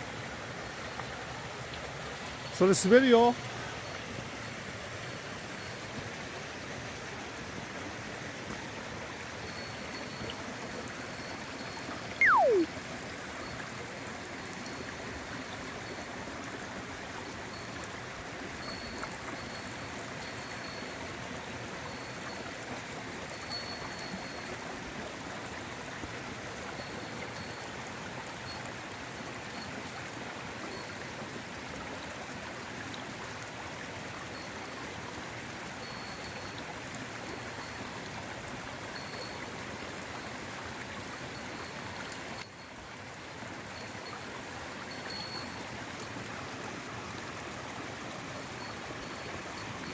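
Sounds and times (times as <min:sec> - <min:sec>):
stream flowing: 0:00.0 - 0:49.9
short whistle sliding down: 0:12.2 - 0:12.7.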